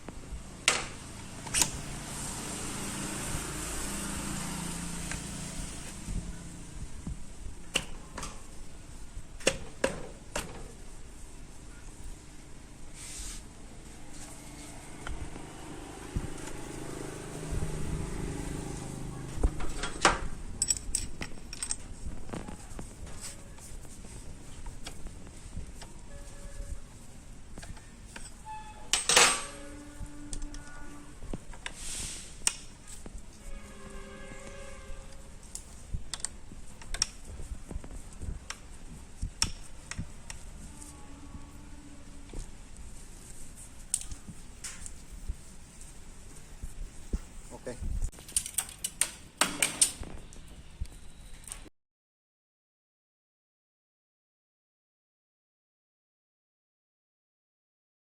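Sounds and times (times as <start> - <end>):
metallic clicks and clinks: 20.6 - 21.9, 48.2 - 50.0
small tools clicking and tapping: 35.5 - 37.2, 43.8 - 45.0.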